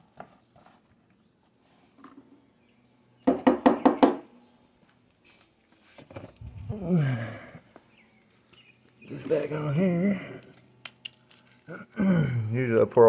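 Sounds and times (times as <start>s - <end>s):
hard object knocking: 3.3s - 4.2s.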